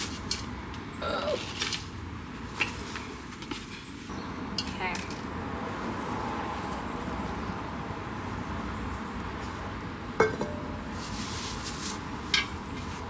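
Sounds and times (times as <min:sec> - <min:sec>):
scraping rustle: 0:01.2 - 0:04.1, 0:10.7 - 0:13.0
plant pot clinking: 0:10.2 - 0:11.2.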